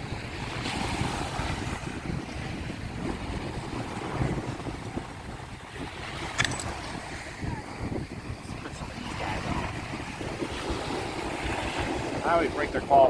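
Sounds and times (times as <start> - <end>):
surf breaking on beach: 0.0 - 13.0
wind buffeting microphone: 0.0 - 13.0.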